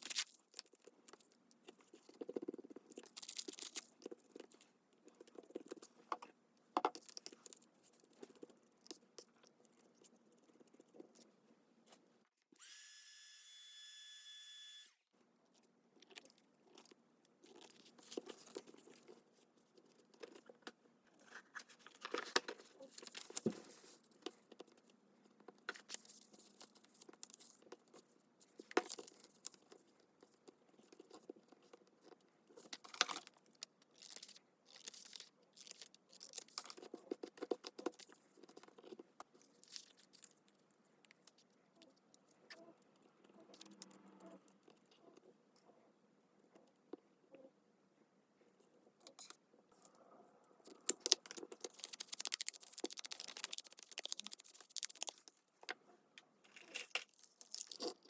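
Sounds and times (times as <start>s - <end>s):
paper rustling and crinkling: 21.1s - 24.7s, 51.0s - 55.4s.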